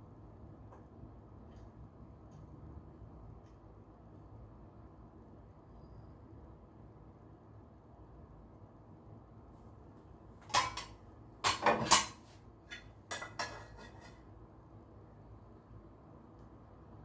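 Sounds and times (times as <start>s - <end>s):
utensils clinking against pot: 10.4s - 14.2s.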